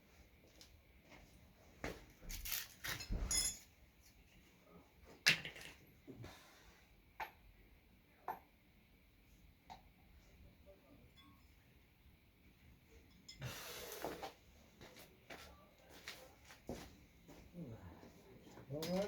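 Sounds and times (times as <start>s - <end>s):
hard objects clinking and knocking: 18.7s - 19.0s.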